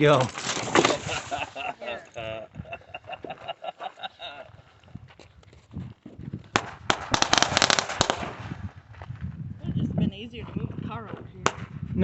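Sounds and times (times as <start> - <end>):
crackling firework pops: 6.5 - 8.6, 11.4 - 11.8
fireworks popping: 6.5 - 8.7.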